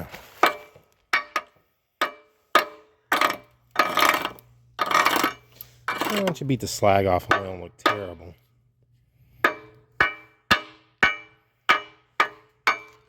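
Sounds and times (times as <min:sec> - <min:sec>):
low steady hum: 0:00.0 - 0:13.0
rasping chipping and scraping: 0:02.5 - 0:06.6
hammer tapping on steel: 0:09.4 - 0:13.0.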